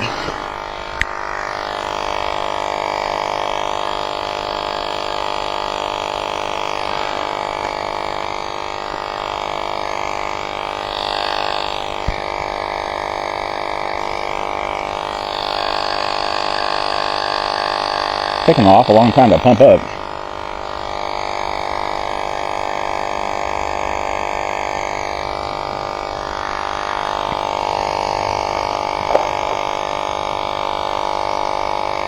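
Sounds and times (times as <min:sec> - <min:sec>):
electric air compressor running: 0:00.0 - 0:32.0.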